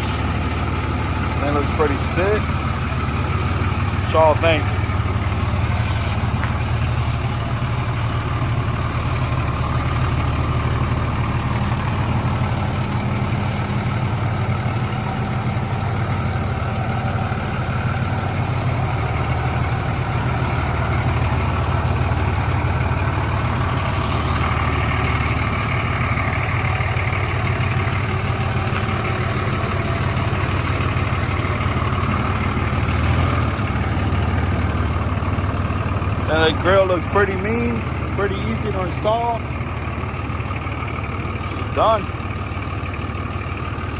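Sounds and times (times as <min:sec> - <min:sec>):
pickup engine idling: 0:00.0 - 0:43.9.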